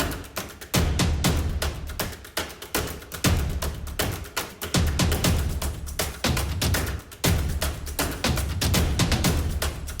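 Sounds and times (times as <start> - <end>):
fast drum beat music: 0.0 - 10.0.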